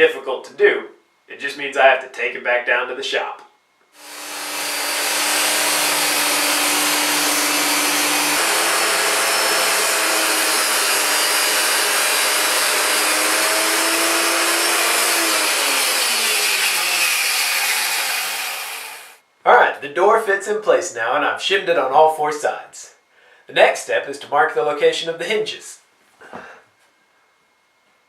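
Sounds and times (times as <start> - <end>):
circular saw cutting wood: 4.0 - 19.2.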